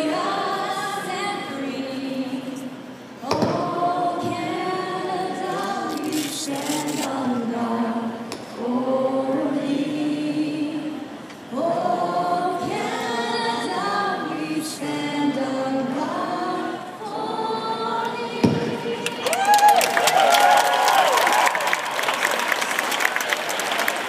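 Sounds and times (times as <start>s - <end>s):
choir singing: 0.0s - 19.3s.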